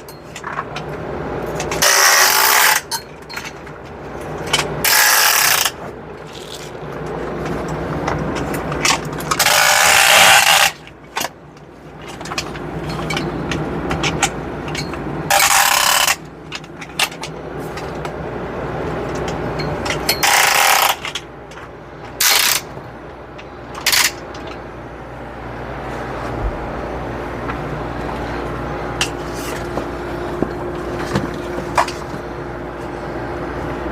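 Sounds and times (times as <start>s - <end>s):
steady low hum: 0.0s - 33.9s
rope ratchet ratcheting: 1.6s - 3.4s, 4.4s - 6.7s, 8.8s - 11.3s, 14.0s - 16.3s, 19.8s - 21.2s, 22.2s - 22.7s
ratchet clicks: 22.2s - 22.7s.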